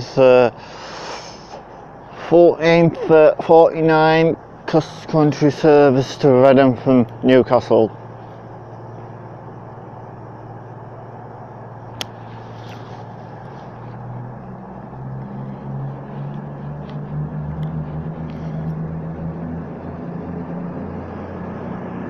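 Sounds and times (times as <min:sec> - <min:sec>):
train diesel engines revving: 0:00.0 - 0:22.0
sharp click: 0:11.9 - 0:12.8.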